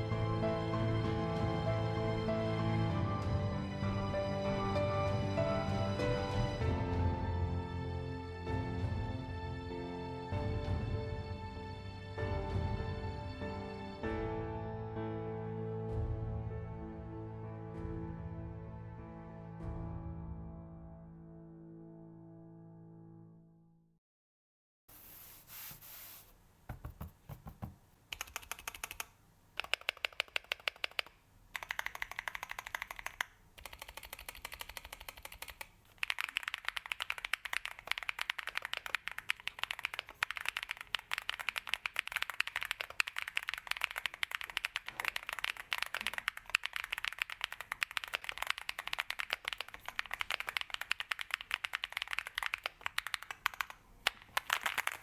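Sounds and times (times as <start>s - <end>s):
mechanical keyboard typing: 26.7s - 55.0s.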